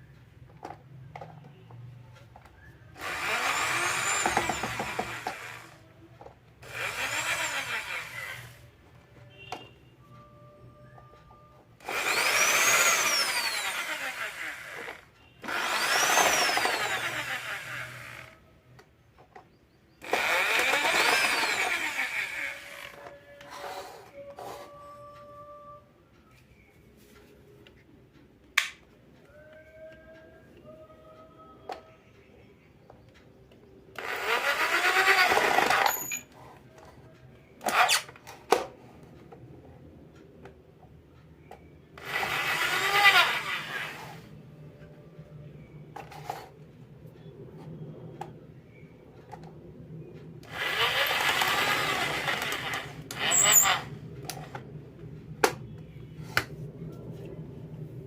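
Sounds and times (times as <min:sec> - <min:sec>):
electric drill whine: 0:03.0 - 0:05.8, 0:06.6 - 0:08.6, 0:11.8 - 0:18.4, 0:20.0 - 0:24.6, 0:34.0 - 0:36.3, 0:42.0 - 0:44.3, 0:50.4 - 0:54.5.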